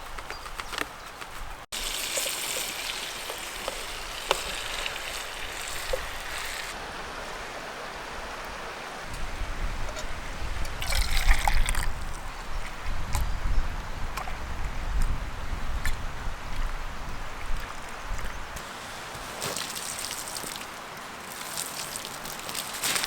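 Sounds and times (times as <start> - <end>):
water pouring and trickling: 1.7 - 6.8, 10.8 - 12.0, 18.6 - 23.0
wind rumble on microphone: 9.0 - 18.6.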